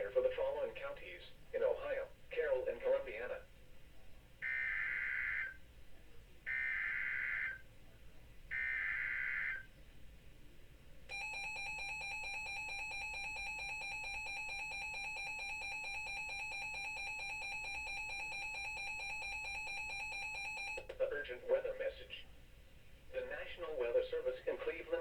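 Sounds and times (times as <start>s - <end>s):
two-tone alert signal: 11.1s - 20.8s.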